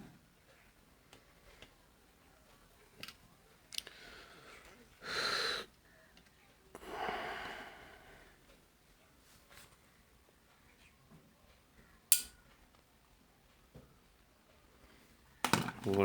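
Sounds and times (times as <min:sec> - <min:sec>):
wheezy exhale: 0:03.9 - 0:05.7, 0:06.8 - 0:08.3.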